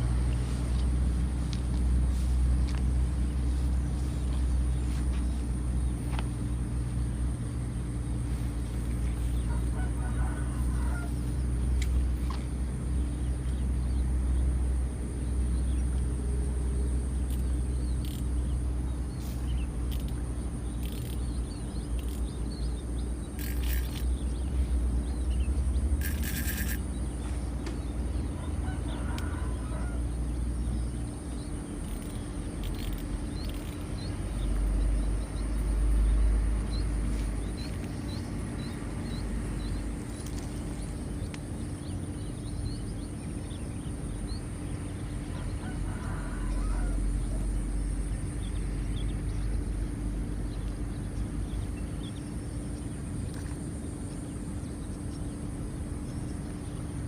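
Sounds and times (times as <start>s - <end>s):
constant low hum: 0.0s - 57.0s
high insect drone: 0.0s - 57.0s
faint bird chirps: 20.7s - 27.3s.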